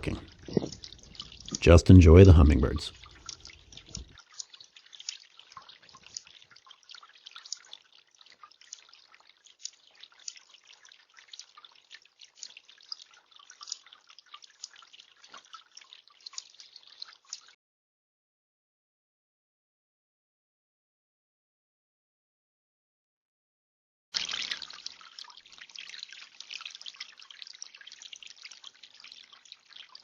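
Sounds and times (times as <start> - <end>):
fountain water trickling and dripping: 0.0 - 17.6, 24.2 - 30.0.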